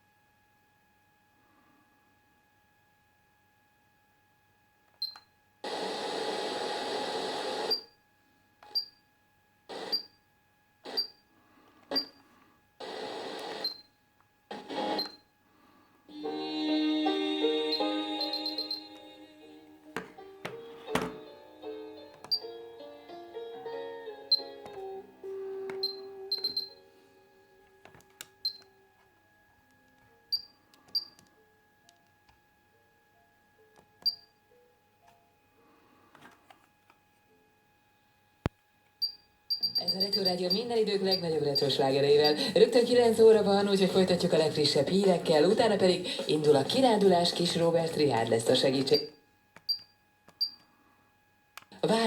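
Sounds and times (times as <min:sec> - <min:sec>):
radio static and hiss: 0:05.6 - 0:07.9, 0:09.7 - 0:09.9, 0:12.8 - 0:13.8, 0:14.5 - 0:15.1, 0:40.0 - 0:49.1
music: 0:16.1 - 0:30.4
held tone: 0:16.2 - 0:19.0.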